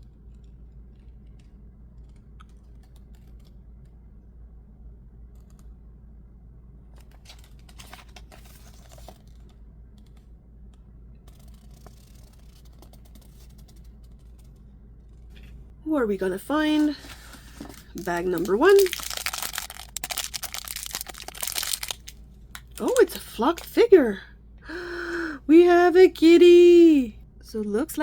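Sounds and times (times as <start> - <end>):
packaging rustling and crinkling: 16.7 - 23.8.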